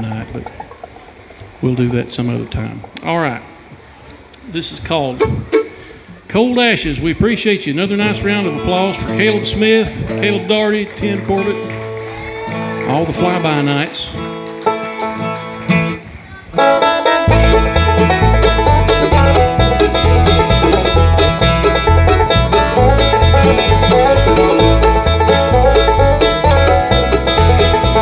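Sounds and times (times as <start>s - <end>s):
bluegrass band playing: 4.6s - 28.0s
banjo: 5.0s - 6.4s, 14.4s - 16.0s, 16.6s - 28.0s
rhythm guitar: 8.0s - 16.0s, 16.6s - 28.0s
bass line: 16.6s - 28.0s.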